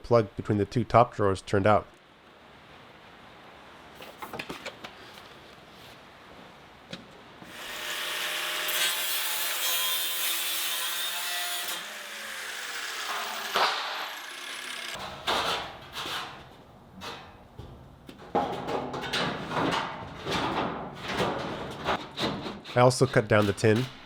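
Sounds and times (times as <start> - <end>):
power saw cutting: 7.5 - 15.0
saw motor winding down whine: 12.0 - 15.0.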